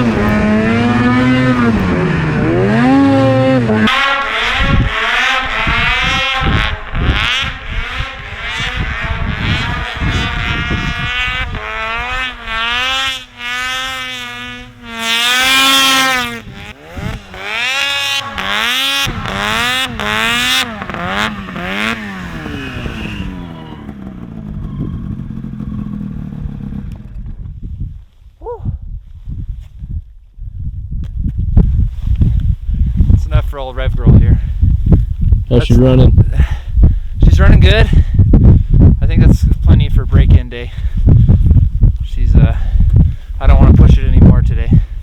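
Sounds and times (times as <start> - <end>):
snowmobile engine revving: 0.0 - 26.9, 35.5 - 36.5.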